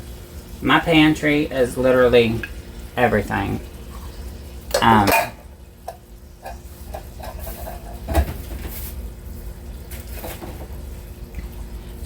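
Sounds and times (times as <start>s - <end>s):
low steady hum: 0.0s - 12.0s
cooking utensils clinking: 4.7s - 8.4s.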